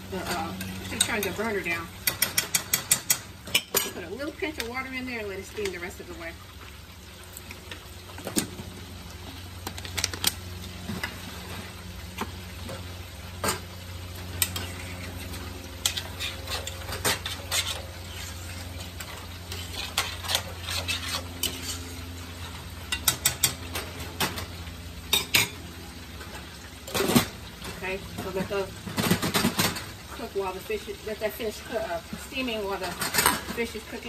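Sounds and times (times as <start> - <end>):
food sizzling in frying pan: 0.0 - 34.0
utensil scraping and clinking pan: 14.4 - 23.8.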